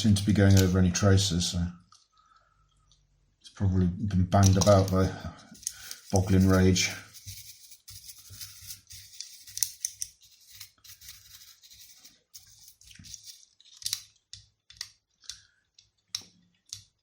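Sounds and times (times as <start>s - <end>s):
plastic parts scraping: 4.4s - 14.1s.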